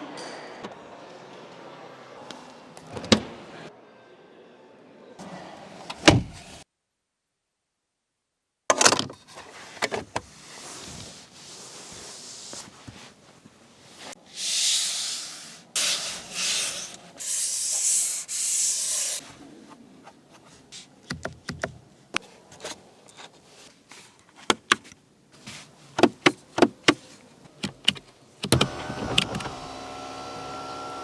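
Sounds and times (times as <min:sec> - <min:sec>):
electric motor whine: 0:28.7 - 0:31.0.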